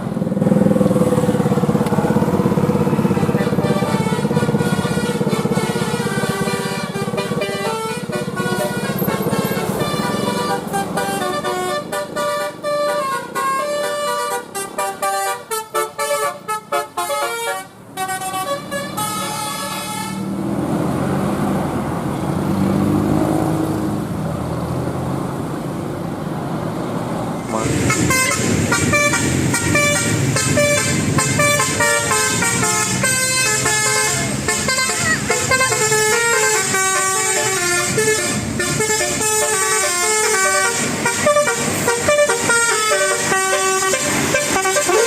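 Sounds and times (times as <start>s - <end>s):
engine noise: 0.0s - 45.0s
multi-tone bus horn melody: 0.5s - 20.5s, 27.5s - 45.0s.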